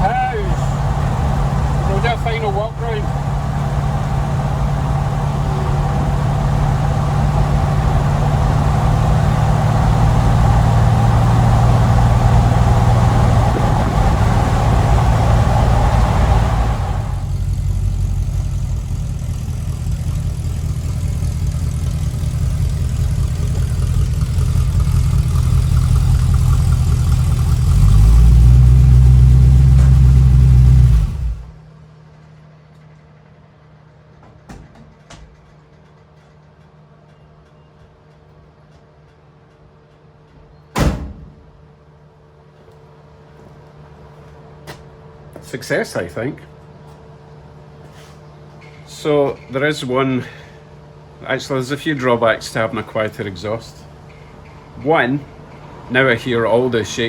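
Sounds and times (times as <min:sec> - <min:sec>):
car engine low exhaust note: 0:00.0 - 0:31.6.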